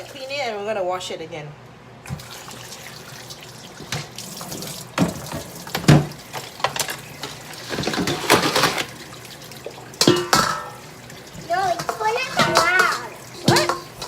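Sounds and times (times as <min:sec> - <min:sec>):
knocks and clatters in sink: 0:03.8 - 0:09.0, 0:09.6 - 0:14.0
tap running into sink: 0:03.8 - 0:09.0.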